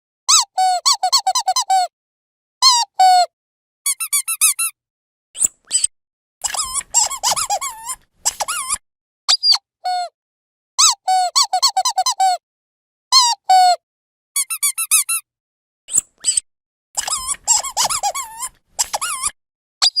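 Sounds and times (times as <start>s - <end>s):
rubber squeaky toy squeaking: 0.3s - 1.9s, 2.6s - 3.3s, 3.9s - 4.8s, 5.4s - 10.1s, 10.8s - 12.4s, 13.2s - 13.8s, 14.4s - 15.3s, 15.9s - 16.4s, 17.0s - 20.0s.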